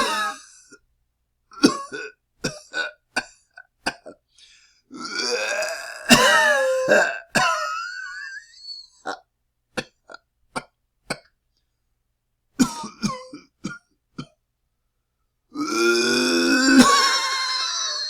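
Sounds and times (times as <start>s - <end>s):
man coughing: 0.0s - 0.4s, 6.1s - 8.4s, 12.6s - 14.3s.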